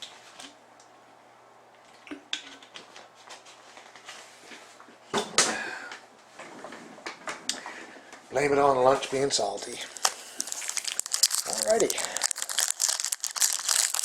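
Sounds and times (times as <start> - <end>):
person sipping water: 9.9 - 14.0.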